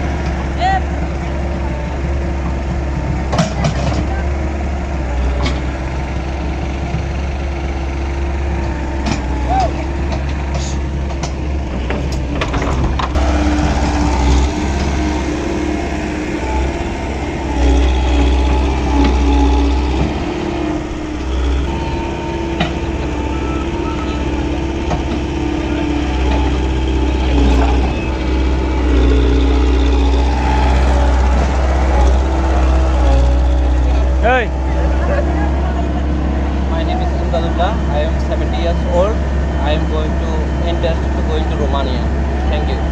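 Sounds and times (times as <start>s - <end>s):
excavator diesel engine running: 0.0s - 42.9s.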